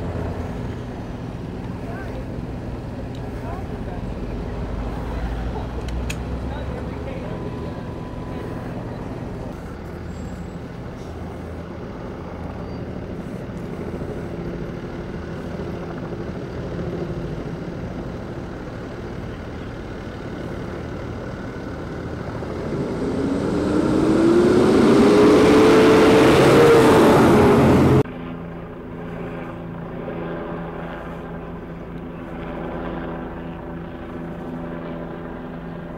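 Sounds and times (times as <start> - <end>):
heavy engine droning: 0.0 - 16.7, 17.4 - 28.1
engine rising whine and rushing: 17.8 - 28.1.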